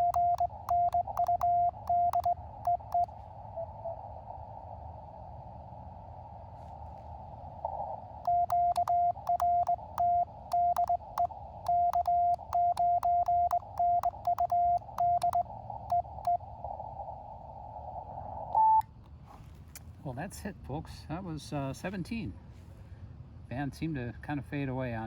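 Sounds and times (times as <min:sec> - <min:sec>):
high beep: 0:00.0 - 0:03.1, 0:08.3 - 0:16.4
key clicks: 0:00.0 - 0:03.1, 0:08.3 - 0:11.3, 0:11.9 - 0:15.4
morse code sidetone: 0:00.0 - 0:03.1, 0:08.3 - 0:16.4.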